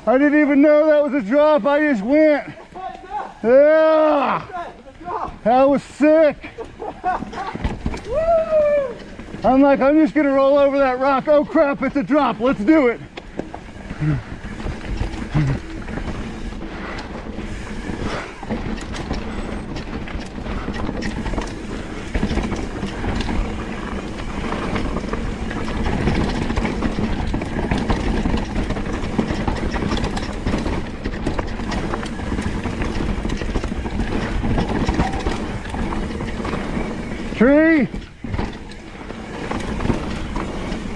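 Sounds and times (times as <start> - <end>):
bike tyres rumbling over rock: 0.0 - 40.9.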